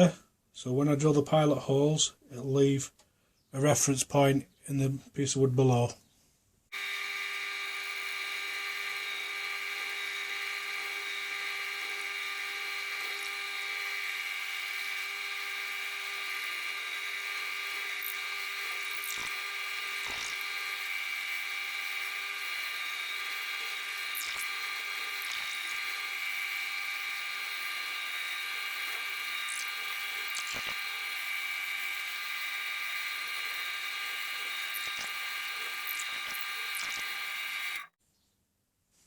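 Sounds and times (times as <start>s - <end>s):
electric drill whining: 6.7s - 38.0s.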